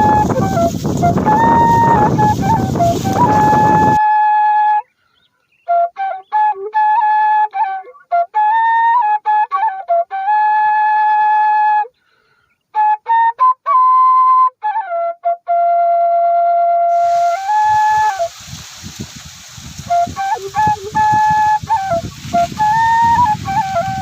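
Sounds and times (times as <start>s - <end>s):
rushing hiss with low rumbling: 0.0s - 4.0s, 16.9s - 24.0s
solo flute melody: 0.0s - 12.0s, 12.7s - 24.0s.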